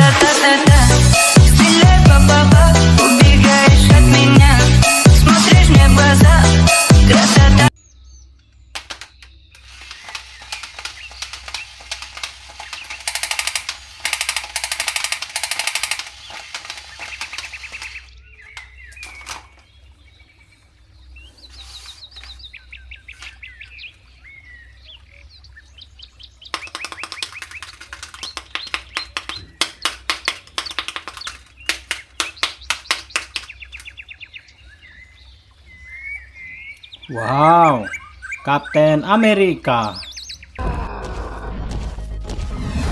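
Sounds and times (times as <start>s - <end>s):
birds chirping faintly: 7.7s - 40.6s
plastic packaging crinkling and clicking: 8.7s - 19.8s, 21.8s - 24.0s, 26.5s - 34.0s.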